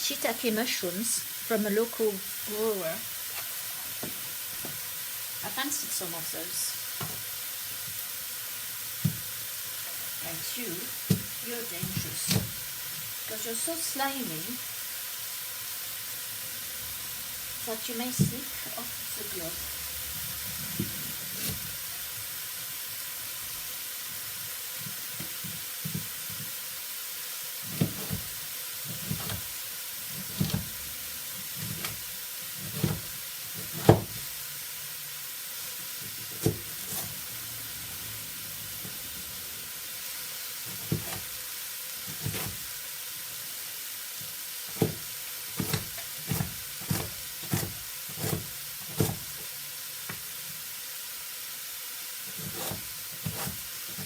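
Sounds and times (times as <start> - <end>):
food sizzling in a pan: 0.0 - 54.0
knocks and taps of kitchen work: 3.4 - 4.8, 7.0 - 7.3, 9.0 - 9.3, 11.0 - 12.6, 18.1 - 18.5, 24.8 - 26.6, 27.7 - 29.5, 30.1 - 30.8, 32.6 - 34.3, 36.0 - 37.1, 40.7 - 41.3, 42.1 - 42.7, 44.7 - 49.5.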